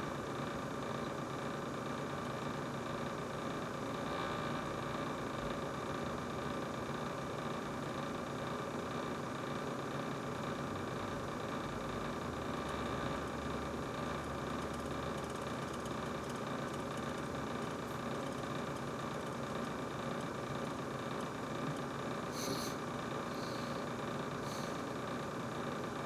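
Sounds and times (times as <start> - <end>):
refrigerator humming: 0.0 - 26.0.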